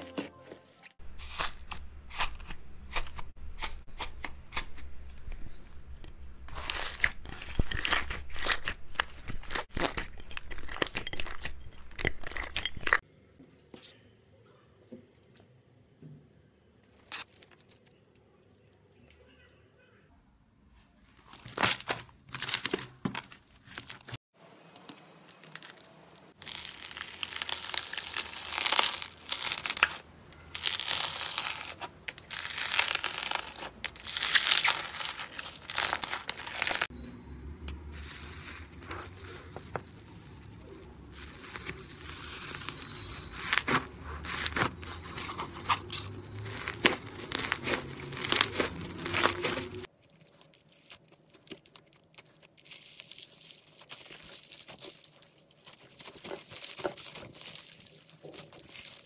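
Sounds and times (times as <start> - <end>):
slime being squished: 6.5 - 13.0, 26.4 - 36.9, 38.0 - 59.0.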